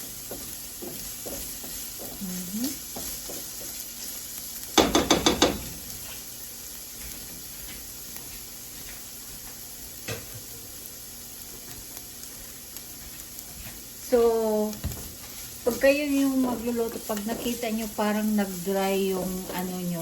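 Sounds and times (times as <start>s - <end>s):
food sizzling in a frying pan: 0.0s - 20.0s
utensil knocking against pan: 4.8s - 5.8s.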